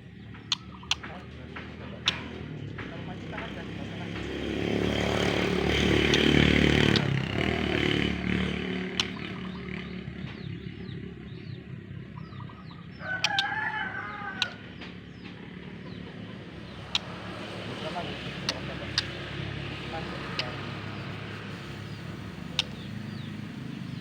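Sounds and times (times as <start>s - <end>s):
small birds chirping: 0.0s - 24.0s
rooster crowing: 13.0s - 14.7s.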